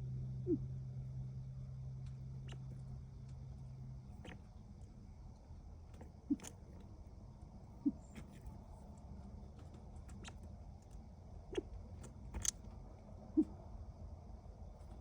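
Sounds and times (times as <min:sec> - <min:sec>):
quail hooting softly: 0:00.4 - 0:00.6, 0:02.4 - 0:02.8, 0:04.2 - 0:04.5, 0:06.0 - 0:06.6, 0:07.7 - 0:08.4, 0:13.3 - 0:13.6.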